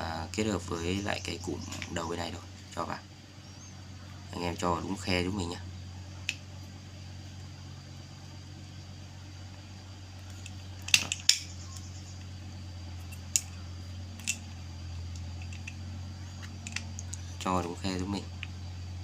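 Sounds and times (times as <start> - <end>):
steady low hum: 0.0 - 19.0
small parts clicking and knocking: 10.2 - 12.3, 13.0 - 18.6.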